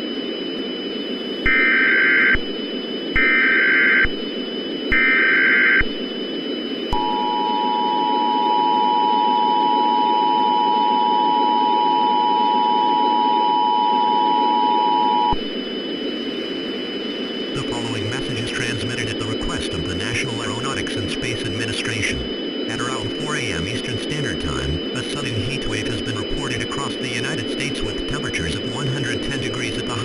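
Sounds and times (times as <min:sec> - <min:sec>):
warbling data tones: 0:00.8 - 0:30.0
radio hiss: 0:14.6 - 0:30.0.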